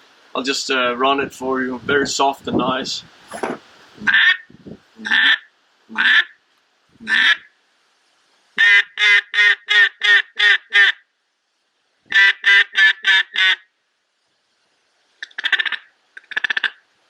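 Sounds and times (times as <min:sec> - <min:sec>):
duck call quacks: 0:03.3 - 0:04.4, 0:06.0 - 0:06.3, 0:07.1 - 0:07.5, 0:08.6 - 0:11.0, 0:12.1 - 0:13.7, 0:15.2 - 0:16.8.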